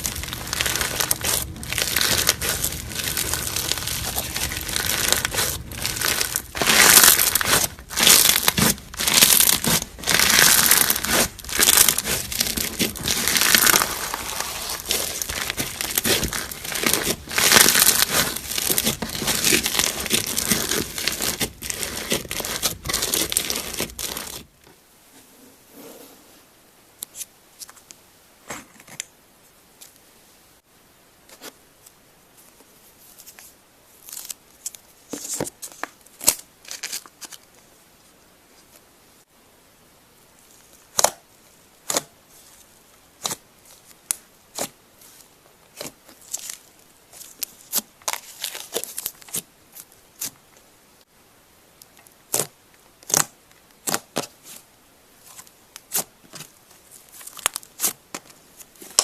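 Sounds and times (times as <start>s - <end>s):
slime crackling and squishing: 0.0s - 24.5s, 55.3s - 59.0s.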